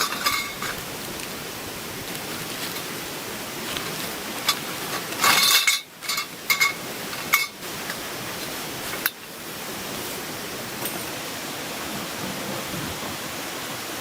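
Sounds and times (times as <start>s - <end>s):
steady rushing noise: 0.0s - 5.3s, 6.0s - 14.0s.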